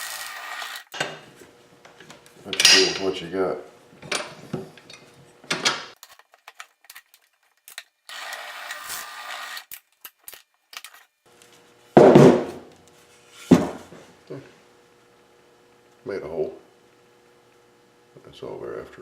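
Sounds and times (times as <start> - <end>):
drill press drilling: 0.0 - 0.9, 8.1 - 9.7
faint steady hum: 1.0 - 19.0.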